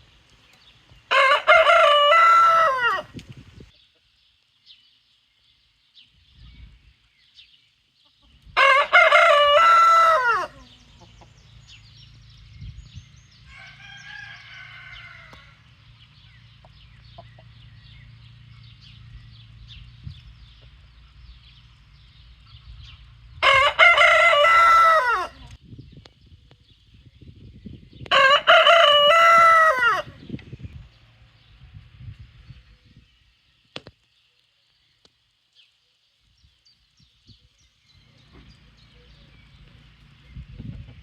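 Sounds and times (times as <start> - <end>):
rooster crowing: 1.1 - 3.1, 8.6 - 10.8, 13.4 - 15.6, 23.4 - 25.4, 28.1 - 30.2.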